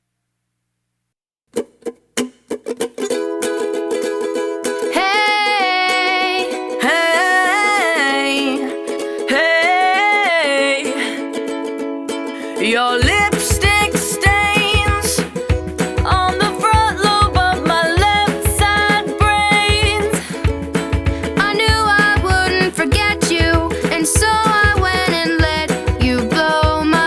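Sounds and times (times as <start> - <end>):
ukulele strumming: 1.5 - 27.0
sliding melody line: 12.7 - 27.0.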